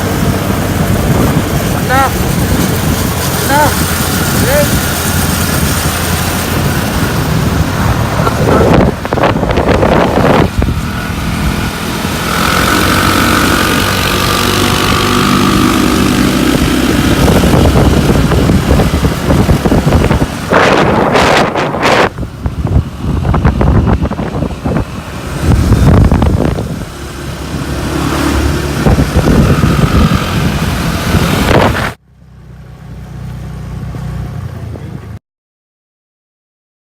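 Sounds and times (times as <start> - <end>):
wind buffeting microphone: 0.0 - 32.0
motorbike engine running: 0.0 - 34.8.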